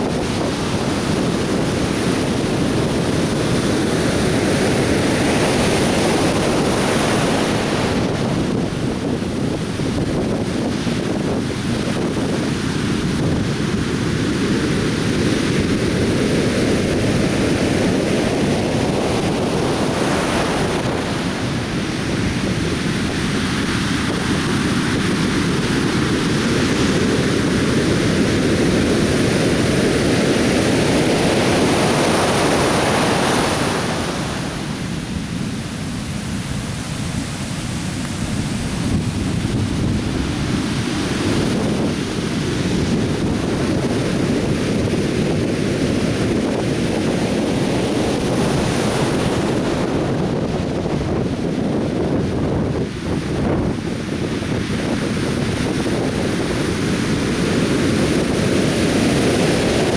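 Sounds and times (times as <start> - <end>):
ocean surf washing onto beach: 0.0 - 59.9.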